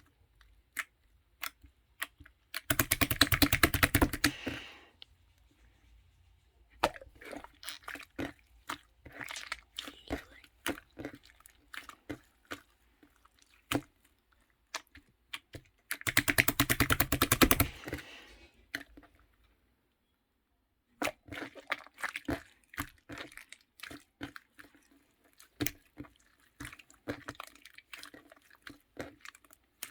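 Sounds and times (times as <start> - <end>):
sticky pops and clicks: 0.7 - 4.4, 15.9 - 17.8.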